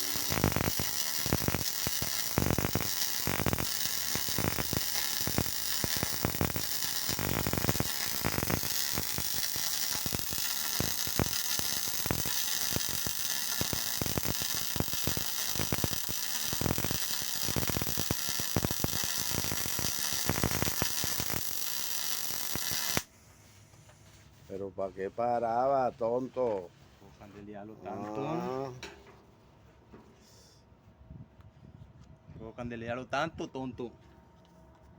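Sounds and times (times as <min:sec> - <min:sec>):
welding arc crackling: 0:00.0 - 0:23.1.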